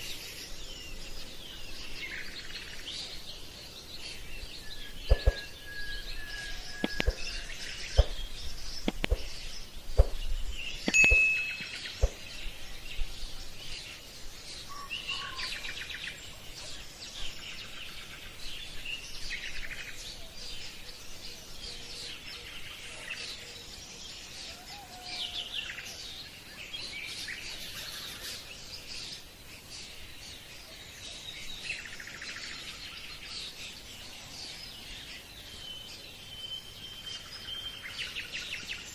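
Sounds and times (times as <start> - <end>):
faint outdoor hiss: 0.0 - 38.9
small birds chirping: 0.0 - 38.9
sharp taps: 6.8 - 7.3, 8.8 - 9.4.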